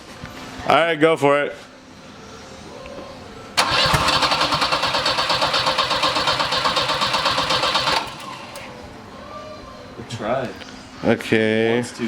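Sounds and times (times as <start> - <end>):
starter cranking car engine: 3.6 - 8.7.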